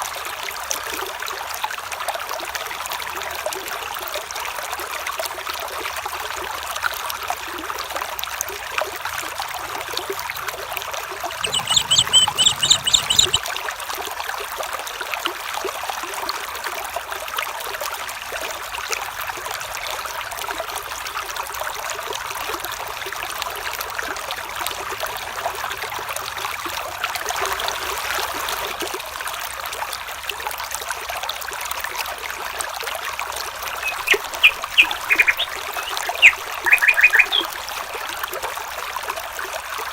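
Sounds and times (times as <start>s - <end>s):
stream water trickling: 0.0s - 39.9s
high repeated call: 11.4s - 13.4s, 33.6s - 37.6s
short high calls: 11.4s - 13.4s, 33.5s - 37.8s.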